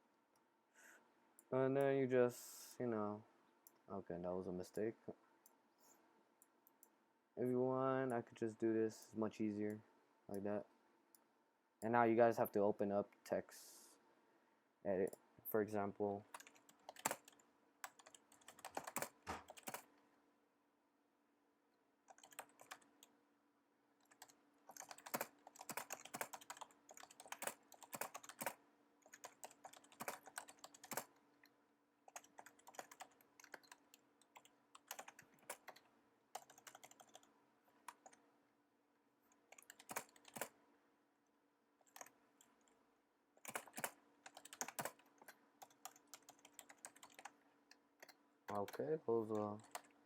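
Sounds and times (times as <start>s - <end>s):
typing on computer keyboard: 16.3s - 19.9s, 22.1s - 23.1s, 24.0s - 31.2s, 32.1s - 35.8s, 36.4s - 38.2s, 39.5s - 40.5s, 43.4s - 47.4s, 48.0s - 50.0s.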